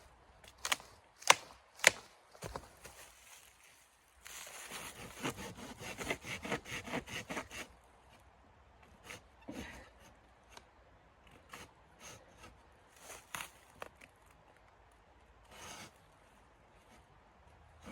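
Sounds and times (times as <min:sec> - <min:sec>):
hand tool rasping wood: 0:04.7 - 0:07.7, 0:15.5 - 0:15.9.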